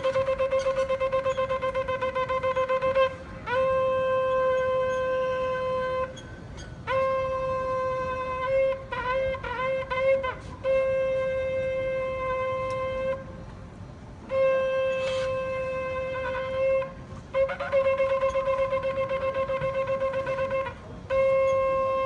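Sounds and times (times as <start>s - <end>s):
ram's-horn trumpet blasts: 0.0s - 13.4s, 14.2s - 22.0s.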